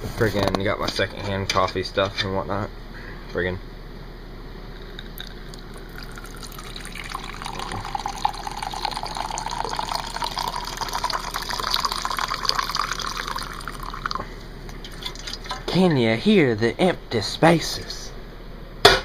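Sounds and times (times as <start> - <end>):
liquid pouring into container: 4.8 - 15.8.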